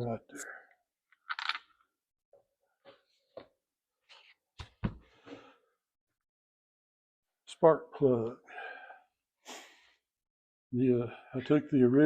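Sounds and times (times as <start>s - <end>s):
chainsaw parts and screws handled: 1.2s - 1.6s.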